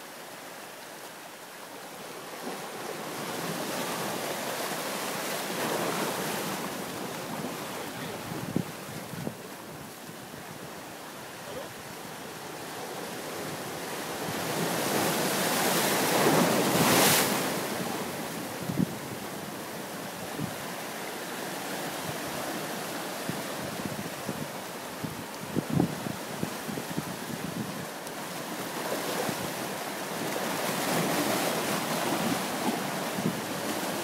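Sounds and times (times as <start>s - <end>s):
sea surf breaking on shore: 0.0s - 34.0s
wind buffeting microphone: 7.3s - 9.9s.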